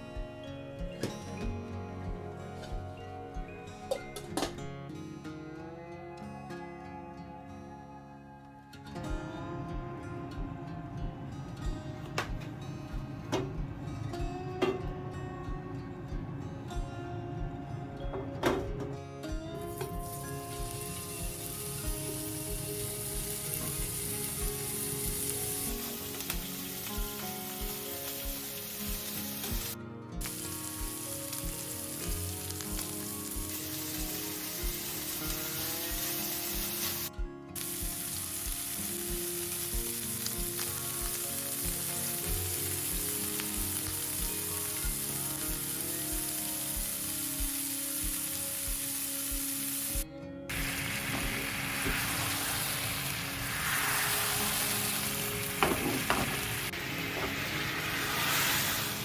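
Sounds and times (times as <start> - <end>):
soft music with low beat: 0.0 - 59.0
food sizzling in a frying pan: 19.6 - 59.0.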